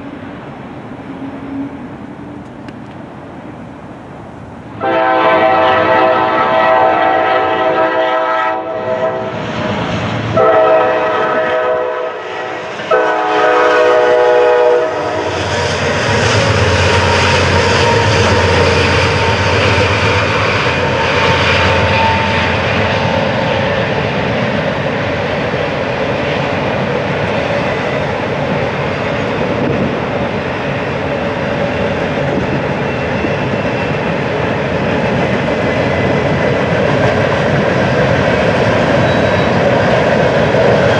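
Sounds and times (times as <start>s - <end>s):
train passing rumble: 0.0s - 40.9s
train wheel noise: 0.0s - 40.9s
locomotive air horn blasts: 4.8s - 9.4s, 10.4s - 15.6s.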